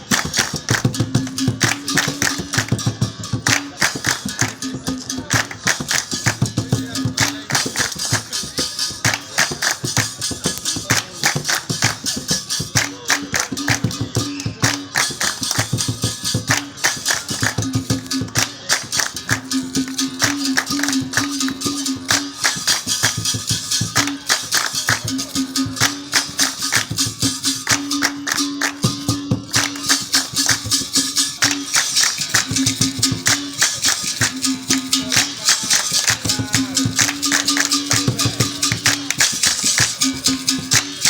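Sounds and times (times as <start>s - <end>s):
fast percussion strikes: 0.0s - 41.0s
shaker rattle: 5.4s - 28.0s, 29.6s - 41.0s.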